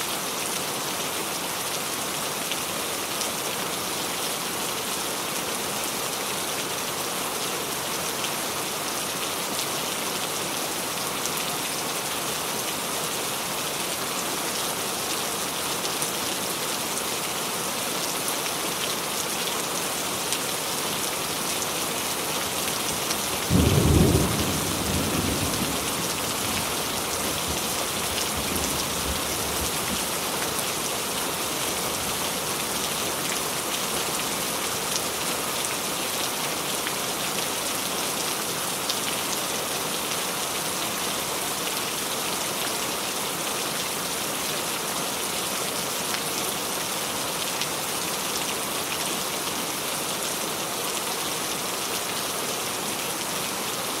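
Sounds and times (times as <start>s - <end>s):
steady rain: 0.0s - 54.0s
low rumble of thunder: 23.5s - 26.8s.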